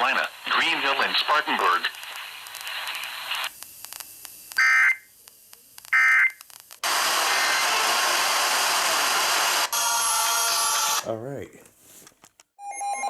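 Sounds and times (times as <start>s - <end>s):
radio static hiss: 0.0s - 9.8s.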